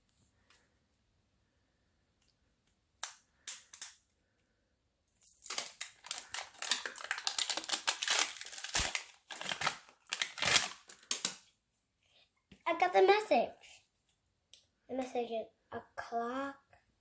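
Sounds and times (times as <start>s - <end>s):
plastic wrapping tearing: 5.2s - 11.4s.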